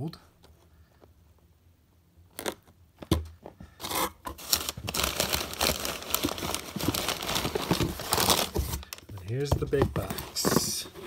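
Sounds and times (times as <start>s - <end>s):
packing material crinkling: 3.8s - 10.7s
cardboard scrape and thump: 4.3s - 8.8s, 9.4s - 11.0s.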